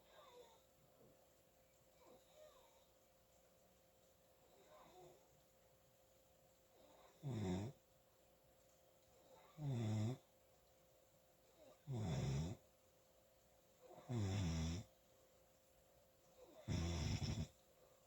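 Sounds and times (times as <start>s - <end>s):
person snoring: 16.7s - 17.5s.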